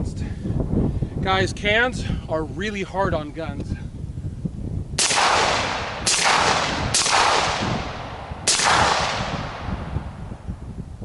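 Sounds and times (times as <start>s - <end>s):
suppressed rifle shots with echo: 5.0s - 10.2s.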